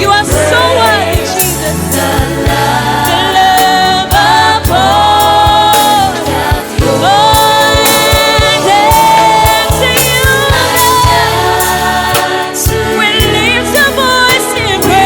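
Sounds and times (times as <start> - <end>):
band with bass and drums: 0.0 - 15.0
voices singing gospel: 0.0 - 15.0.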